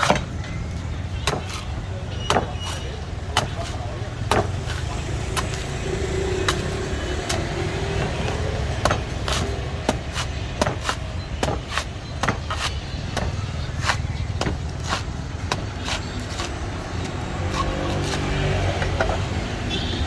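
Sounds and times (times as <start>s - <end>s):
low traffic rumble: 0.0s - 20.0s
blade chopping coconut: 1.2s - 19.3s.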